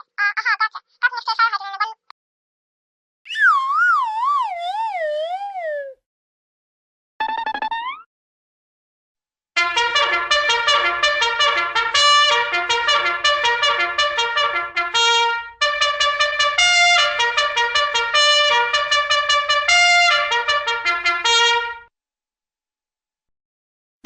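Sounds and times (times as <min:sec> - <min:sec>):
staccato trumpet cartoon music: 0:09.6 - 0:21.9.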